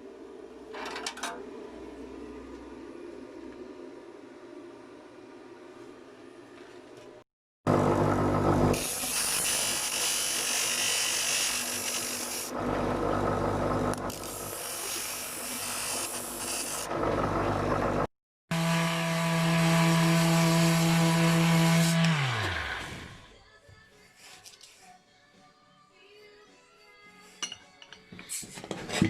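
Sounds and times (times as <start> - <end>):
motor humming and spinning down: 7.7 - 8.8, 12.6 - 14.2, 16.9 - 23.3
plasma cutter hissing: 8.8 - 12.5, 14.1 - 16.9.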